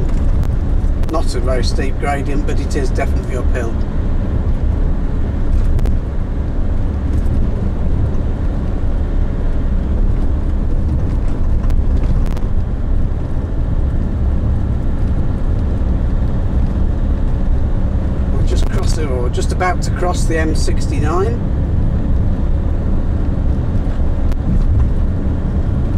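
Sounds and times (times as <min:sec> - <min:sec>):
car engine and tyre rumble: 0:00.0 - 0:25.9.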